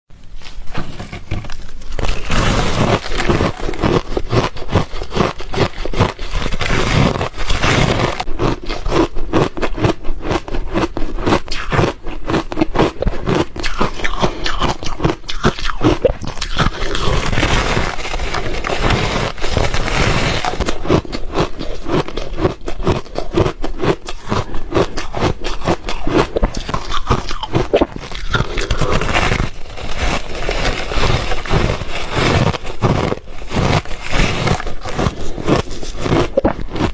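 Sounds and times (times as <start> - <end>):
chewing crunchy ice: 1.4 - 36.9.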